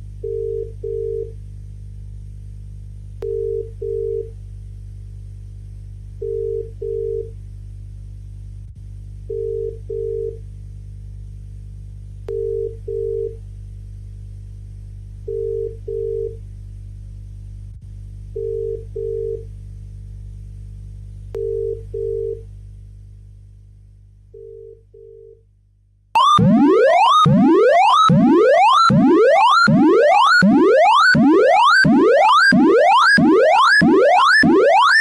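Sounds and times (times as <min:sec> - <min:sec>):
low electrical hum: 0:00.0 - 0:35.0
double ring tone beeps: 0:00.3 - 0:01.3.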